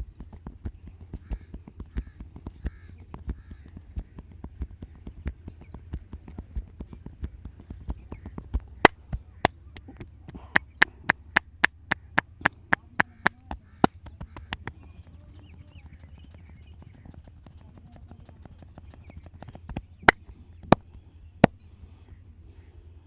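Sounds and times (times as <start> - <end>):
hands striking body in massage: 10.6 - 14.0.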